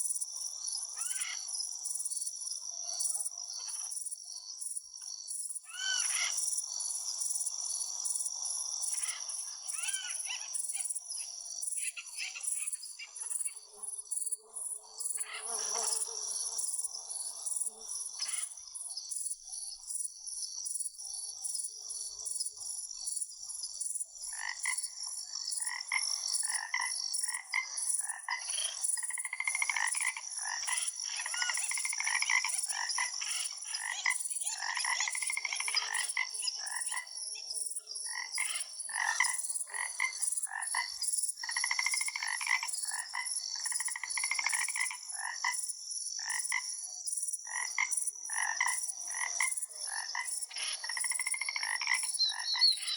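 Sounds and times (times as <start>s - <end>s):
frogs croaking: 0.0s - 52.9s
high-pitched insect trill: 23.0s - 52.9s.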